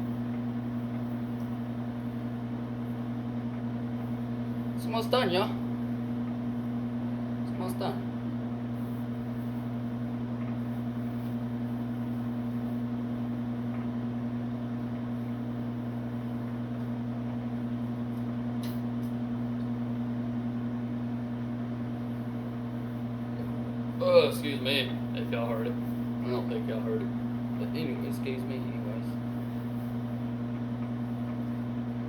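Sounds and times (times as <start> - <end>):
microwave oven humming: 0.0 - 32.0.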